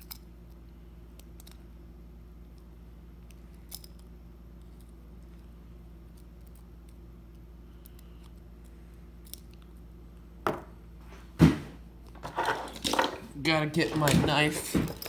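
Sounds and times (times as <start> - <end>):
knock on work surface: 10.5 - 10.7.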